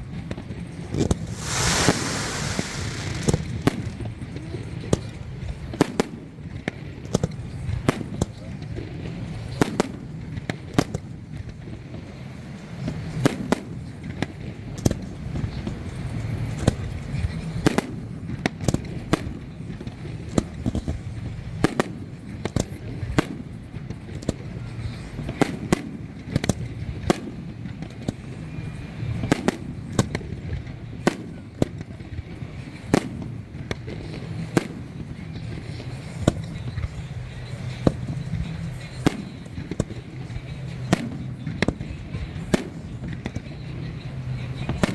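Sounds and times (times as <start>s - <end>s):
fireworks banging: 1.0s - 4.5s
steady low rumble: 1.2s - 4.3s.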